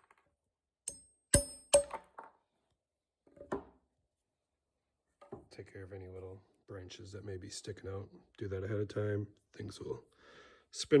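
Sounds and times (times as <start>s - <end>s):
hammer striking knife blade: 0.9s - 2.0s.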